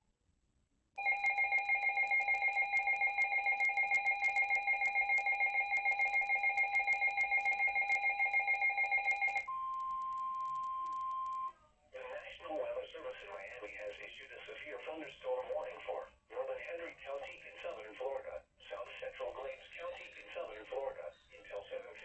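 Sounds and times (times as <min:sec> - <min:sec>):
rapidly pulsing electronic beep: 0:01.0 - 0:11.5.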